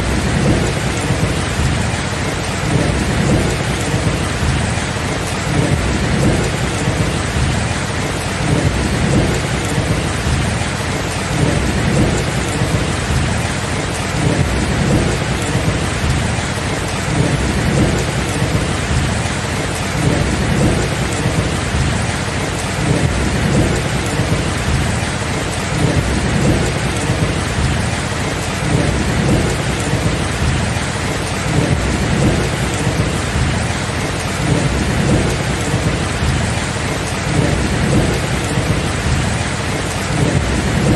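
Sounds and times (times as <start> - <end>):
heavy rain: 0.0 - 40.9
low rumble of thunder: 0.0 - 40.9.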